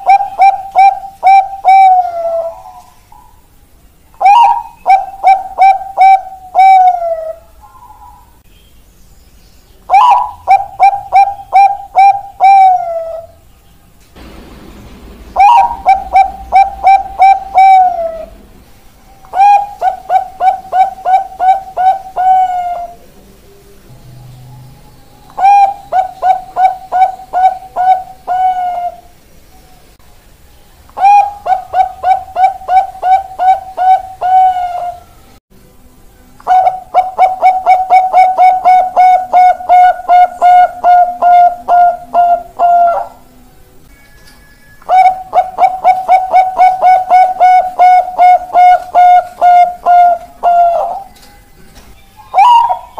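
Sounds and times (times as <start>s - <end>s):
dove cooing: 0.0s - 3.5s, 4.2s - 8.4s, 9.9s - 13.4s, 15.3s - 18.5s, 19.2s - 23.2s, 25.3s - 29.2s, 31.0s - 35.2s, 36.5s - 43.3s, 44.8s - 51.2s, 52.2s - 52.9s.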